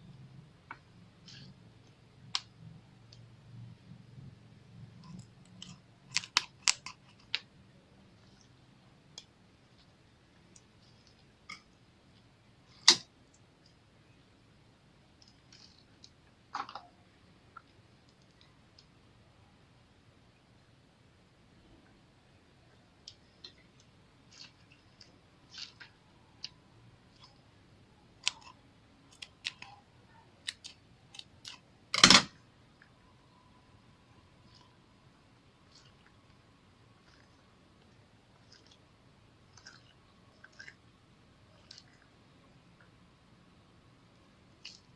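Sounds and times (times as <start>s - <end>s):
slime crackling and clicking: 5.0s - 7.5s, 28.2s - 29.8s, 30.4s - 32.2s.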